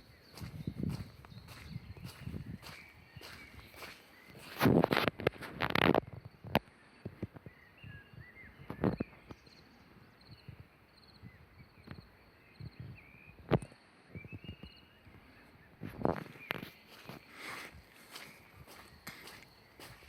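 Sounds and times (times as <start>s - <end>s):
faint repeated high chirping: 0.0s - 4.6s, 6.2s - 20.0s
footsteps on woodland trail: 0.0s - 6.0s, 15.8s - 20.0s
soft bird chirps: 0.0s - 20.0s.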